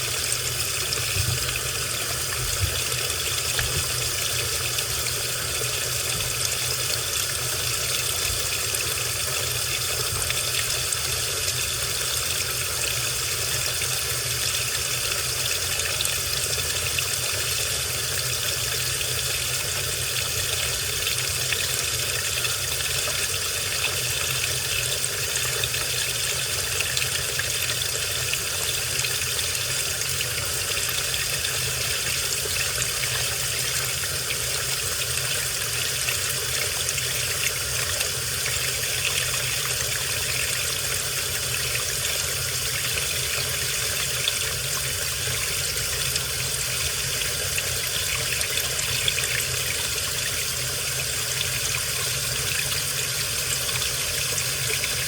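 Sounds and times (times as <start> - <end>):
washing machine running: 0.0 - 55.0
water splashing in drum: 0.9 - 4.4.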